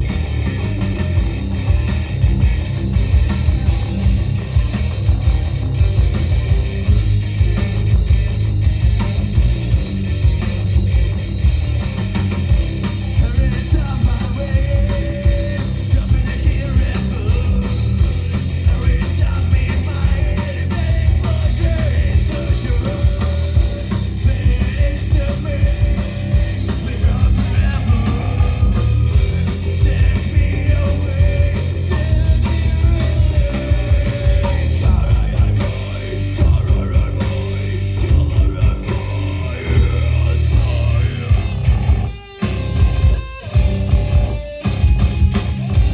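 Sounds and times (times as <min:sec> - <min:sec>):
bass guitar: 0:00.0 - 0:45.9
distorted electric guitars: 0:00.0 - 0:45.9
fast drum-kit hits: 0:00.0 - 0:45.9.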